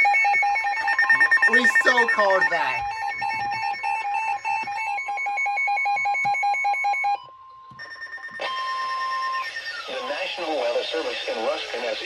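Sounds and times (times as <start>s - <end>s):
rapid electronic alarm beeping: 0.0s - 7.2s, 7.8s - 11.0s
steady high tone: 0.8s - 3.2s.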